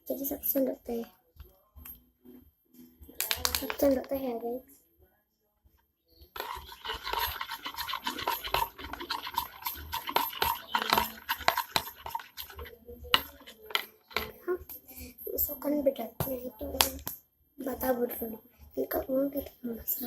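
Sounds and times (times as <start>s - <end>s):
utensil stirring slime in bowl: 3.2s - 4.4s, 6.4s - 18.2s.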